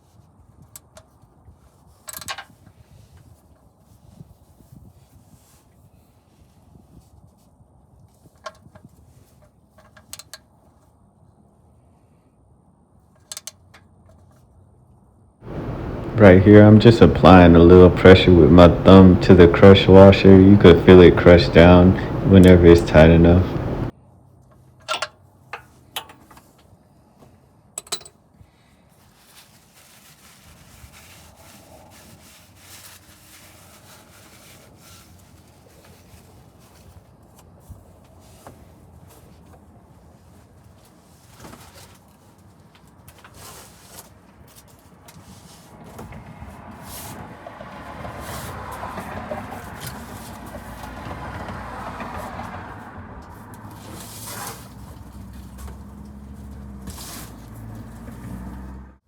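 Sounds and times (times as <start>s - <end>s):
faint low hum: 15.4s - 23.9s
faint rubbing and rustling: 28.6s - 51.1s, 53.5s - 58.7s.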